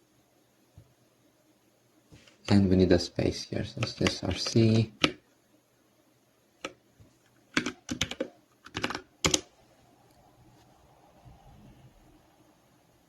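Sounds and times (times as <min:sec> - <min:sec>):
typing on keyboard: 0:07.6 - 0:09.5.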